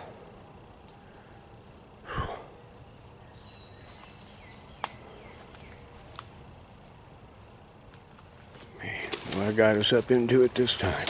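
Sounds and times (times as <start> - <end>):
insect trilling: 2.7 - 6.8
sharp clicks: 4.8 - 5.0.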